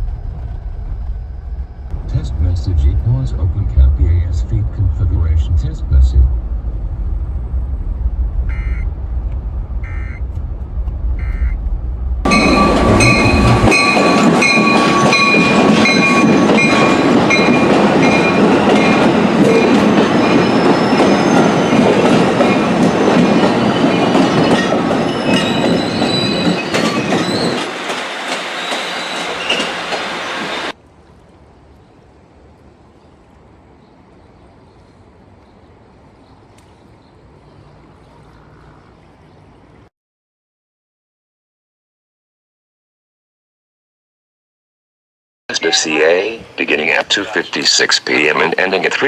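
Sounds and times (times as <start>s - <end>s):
low rumble: 0.0s - 14.4s
high squealing tones: 7.3s - 10.4s, 11.0s - 17.0s
alert header data bursts: 8.5s - 8.8s, 9.8s - 10.2s, 11.2s - 11.6s.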